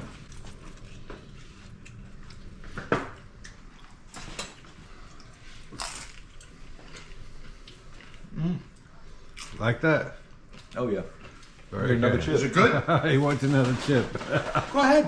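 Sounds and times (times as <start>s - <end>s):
chips crunching: 5.7s - 6.4s.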